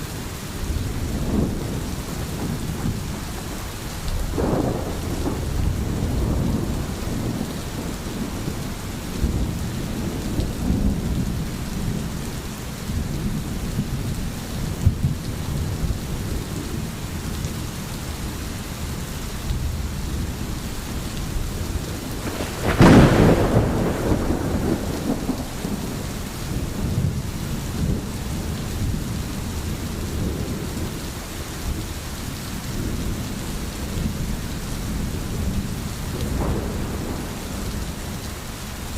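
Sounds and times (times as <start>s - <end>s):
low rolling thunder: 0.0s - 38.9s
steady rain: 0.0s - 38.9s
sharp thunderclap: 4.2s - 11.3s, 22.1s - 28.1s, 36.2s - 38.1s.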